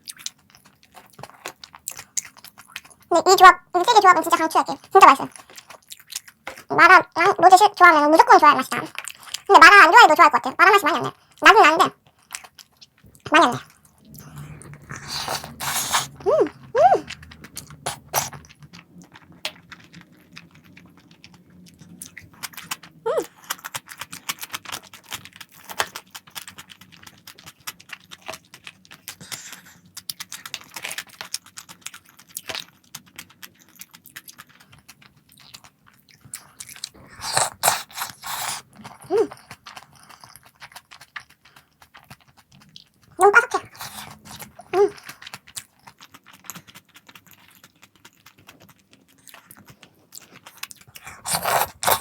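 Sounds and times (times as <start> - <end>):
chewing and biting: 0.0 - 3.1, 4.2 - 6.8, 8.7 - 9.5, 11.1 - 52.0
food crunches: 0.0 - 3.1, 4.8 - 6.7, 12.0 - 14.0, 17.1 - 52.0.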